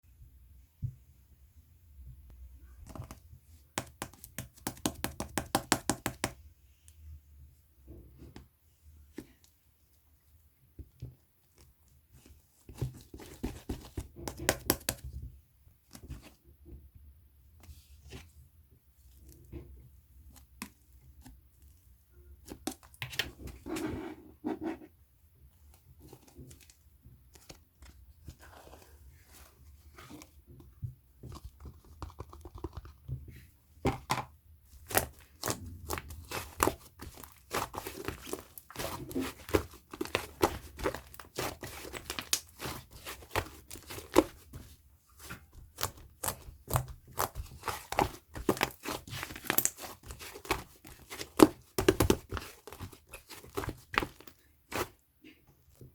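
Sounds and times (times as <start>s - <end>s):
slime squished by hand: 45.2s - 55.0s.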